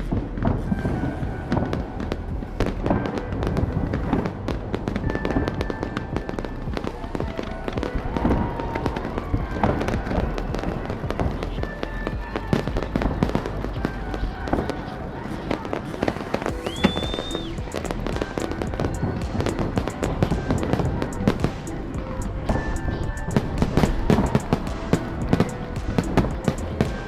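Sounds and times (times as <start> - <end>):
fireworks bangs and crackles: 0.0 - 27.0
music playing: 0.0 - 27.0.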